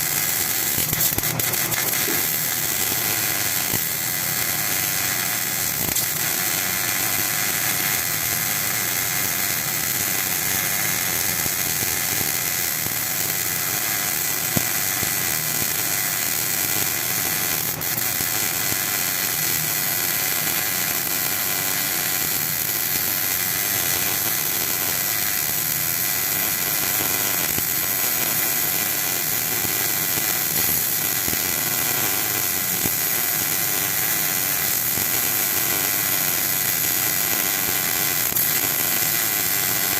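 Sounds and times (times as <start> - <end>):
welder crackling hiss: 0.0 - 39.9.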